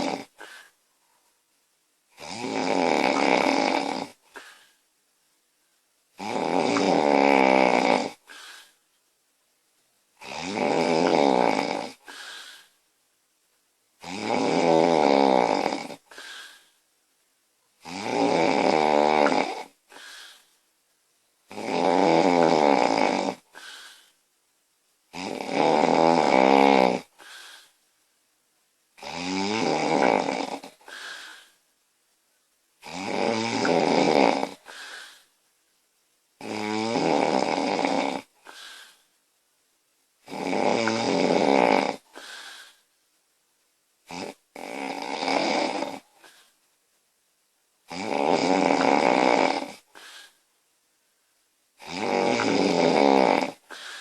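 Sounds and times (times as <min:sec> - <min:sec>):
woman snoring: 0:00.0 - 0:00.8, 0:02.1 - 0:04.8, 0:06.2 - 0:08.8, 0:10.2 - 0:12.8, 0:14.0 - 0:16.7, 0:17.8 - 0:20.4, 0:21.5 - 0:24.1, 0:25.1 - 0:27.7, 0:29.0 - 0:31.6, 0:32.8 - 0:35.3, 0:36.4 - 0:39.0, 0:40.2 - 0:42.8, 0:44.1 - 0:46.5, 0:47.9 - 0:50.4, 0:51.8 - 0:54.0
faint breath sound: 0:00.3 - 0:01.4, 0:04.2 - 0:04.9, 0:08.2 - 0:08.9, 0:12.0 - 0:12.8, 0:16.0 - 0:16.9, 0:19.9 - 0:20.6, 0:23.4 - 0:24.2, 0:27.1 - 0:27.8, 0:30.7 - 0:31.6, 0:34.6 - 0:35.4, 0:38.4 - 0:39.2, 0:42.0 - 0:43.0, 0:46.0 - 0:46.6, 0:49.8 - 0:50.5, 0:53.6 - 0:54.0.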